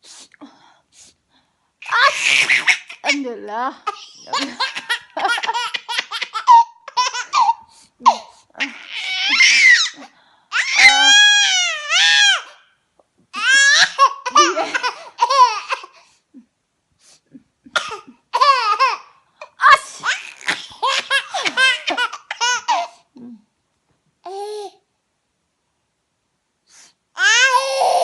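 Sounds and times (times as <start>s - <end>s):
baby laughing: 1.8s - 3.2s, 3.8s - 12.6s, 13.4s - 16.0s, 17.7s - 23.0s.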